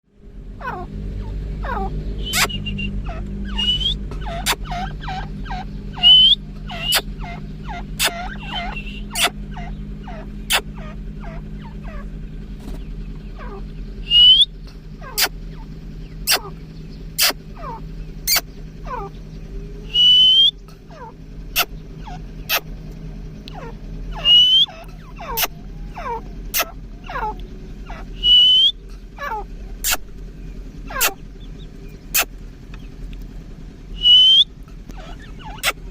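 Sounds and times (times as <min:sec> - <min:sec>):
francolins calling: 0:00.3 - 0:35.9
shrill upswept bird note: 0:01.7 - 0:05.0, 0:05.9 - 0:07.1, 0:14.0 - 0:14.5, 0:19.9 - 0:20.5, 0:24.2 - 0:24.8, 0:28.2 - 0:28.7, 0:34.0 - 0:34.5
sharp clicking bird notes: 0:01.7 - 0:11.4, 0:12.6 - 0:15.7, 0:16.3 - 0:20.8, 0:21.5 - 0:30.3, 0:30.9 - 0:33.3
falling whistled bird notes: 0:02.2 - 0:04.0, 0:06.0 - 0:07.1, 0:14.0 - 0:14.5, 0:19.9 - 0:20.6, 0:24.2 - 0:24.7, 0:28.2 - 0:28.8, 0:34.0 - 0:34.5.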